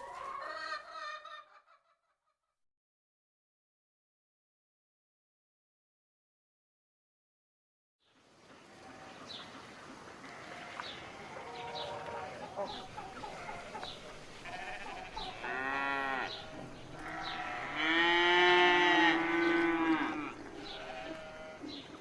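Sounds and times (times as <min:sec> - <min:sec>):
livestock bleating: 0:10.3 - 0:21.8.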